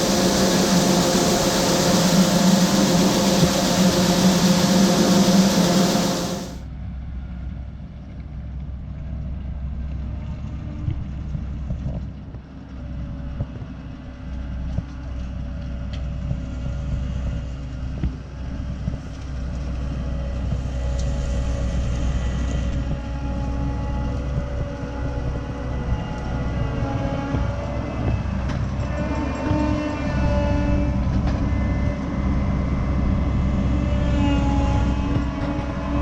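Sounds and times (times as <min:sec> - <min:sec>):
diesel engine droning: 0:00.0 - 0:06.6, 0:18.7 - 0:36.0.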